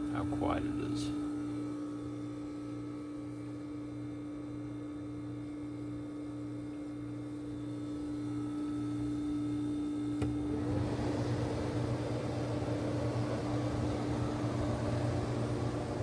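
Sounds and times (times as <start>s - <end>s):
air conditioner humming: 0.0s - 16.0s
air conditioner click: 9.9s - 11.6s.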